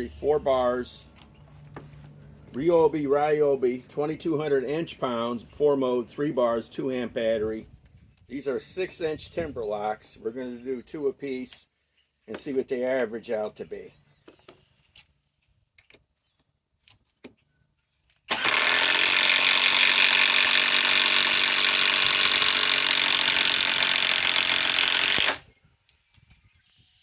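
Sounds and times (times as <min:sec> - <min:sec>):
impact driver driving screw: 0:18.3 - 0:25.4.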